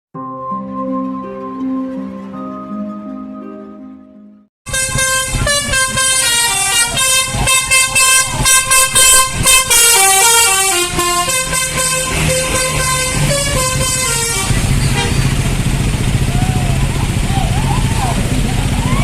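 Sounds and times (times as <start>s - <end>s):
multi-tone air horn tune: 4.7s - 15.6s
bus rumble: 4.7s - 19.0s.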